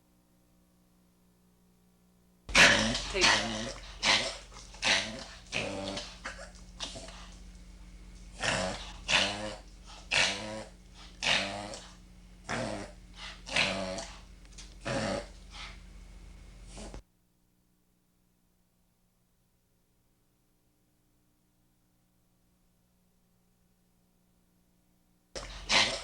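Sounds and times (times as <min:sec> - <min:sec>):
dog reverse sneezing: 0:02.5 - 0:07.4, 0:25.4 - 0:26.0.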